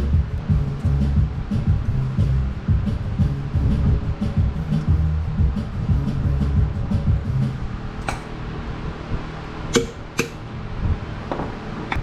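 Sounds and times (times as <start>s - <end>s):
tools clinking on metal: 8.0s - 8.3s, 9.8s - 10.4s.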